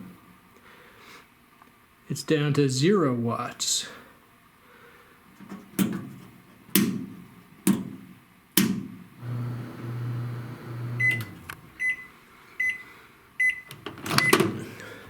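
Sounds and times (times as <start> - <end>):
microwave humming: 0.0 - 0.4, 5.3 - 15.0
microwave clicks: 5.4 - 12.0, 13.4 - 14.9
high keypad beeps: 13.4 - 14.4.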